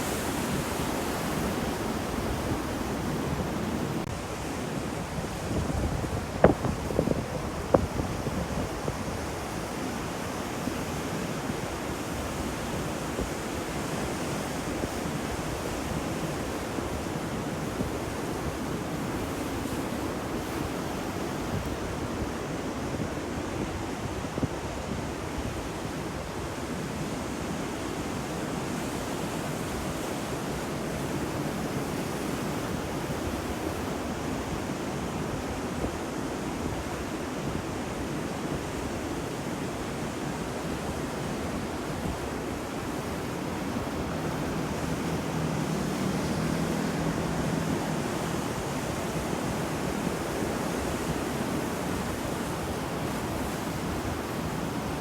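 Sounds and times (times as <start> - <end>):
surf rushing on shore: 0.0 - 55.0.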